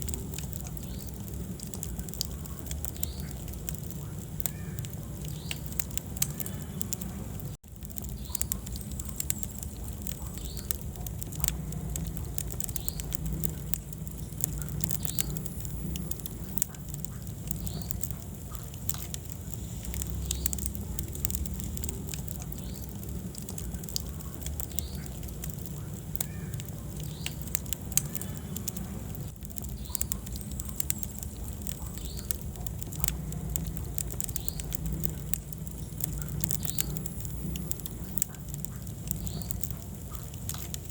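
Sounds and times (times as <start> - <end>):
low rumble of flame: 0.0 - 40.9
wood fire crackling and popping: 0.0 - 40.9.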